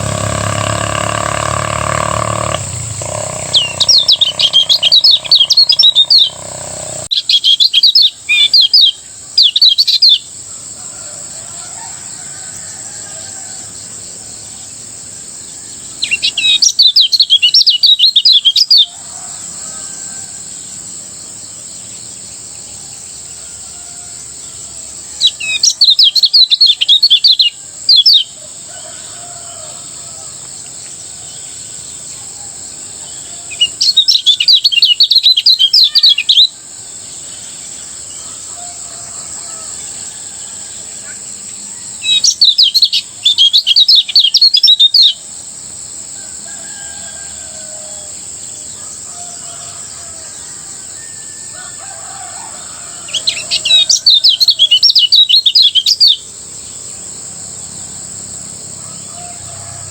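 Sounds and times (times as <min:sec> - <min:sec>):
songbird chattering: 0:00.0 - 0:10.3, 0:15.9 - 0:19.0, 0:25.2 - 0:28.4, 0:33.2 - 0:36.6, 0:41.0 - 0:45.2, 0:53.0 - 0:56.3
faint low bird calls: 0:00.0 - 0:13.7.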